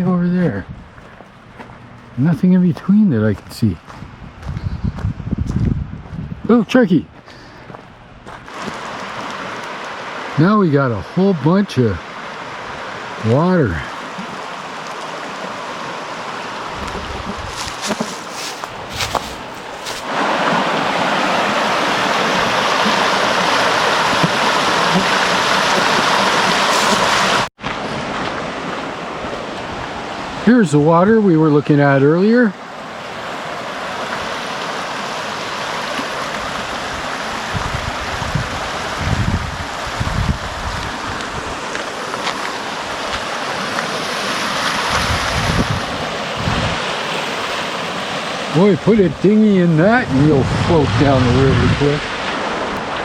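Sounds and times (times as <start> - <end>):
wind buffeting microphone: 0.5 - 2.1, 3.4 - 6.5, 16.6 - 18.0, 36.4 - 43.4, 44.7 - 47.0, 48.8 - 53.0
river water rushing over rapids: 8.5 - 10.4, 12.0 - 30.5, 32.6 - 49.9.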